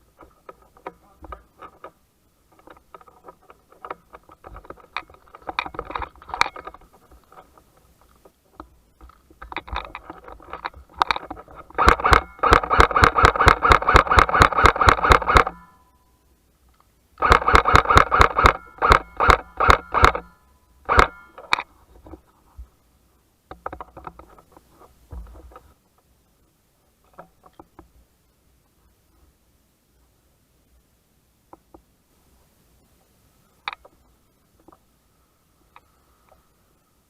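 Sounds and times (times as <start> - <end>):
airsoft rifle firing: 11.8 - 15.6, 17.2 - 20.3, 20.9 - 21.4.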